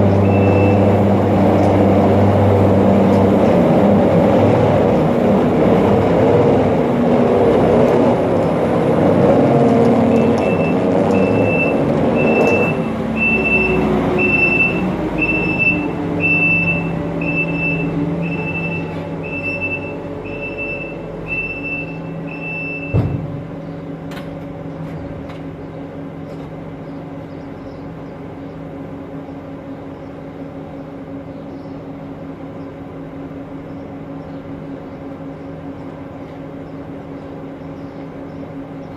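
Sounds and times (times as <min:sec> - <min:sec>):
backup alarm beeping: 0:00.0 - 0:01.1, 0:10.0 - 0:23.3
farm machine engine: 0:00.0 - 0:26.9.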